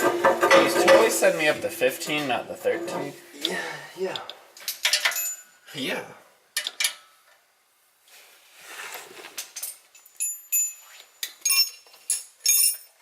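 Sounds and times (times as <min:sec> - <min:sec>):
metal hand tools clinking: 0:04.7 - 0:05.7, 0:09.5 - 0:13.0
soft rustle: 0:08.0 - 0:09.6.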